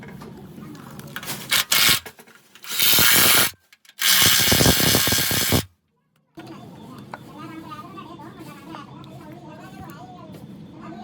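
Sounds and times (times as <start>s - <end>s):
tool scraping against a part: 1.4s - 5.7s.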